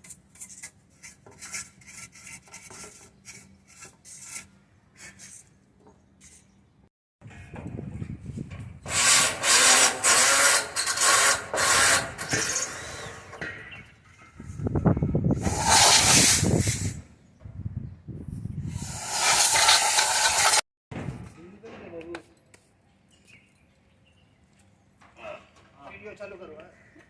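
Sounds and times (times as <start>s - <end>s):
tools working on metal parts: 8.8s - 13.5s.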